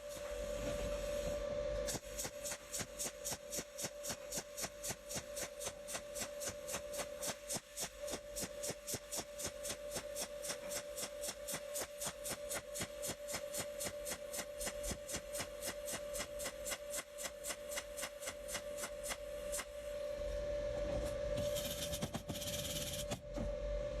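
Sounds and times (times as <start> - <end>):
welding arc pulsing and hissing: 0.0 - 19.9, 21.4 - 23.2
steady whine: 15.8 - 24.0.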